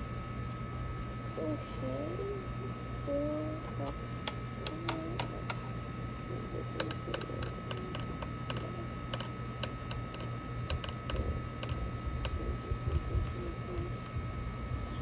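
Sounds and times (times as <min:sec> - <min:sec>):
spoon clicking against plastic cup: 0:06.8 - 0:14.2.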